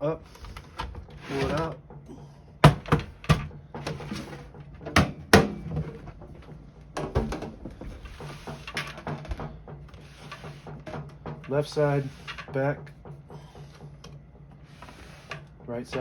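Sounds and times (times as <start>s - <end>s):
typewriter knocks and clunks: 2.6s - 7.6s, 8.3s - 11.7s.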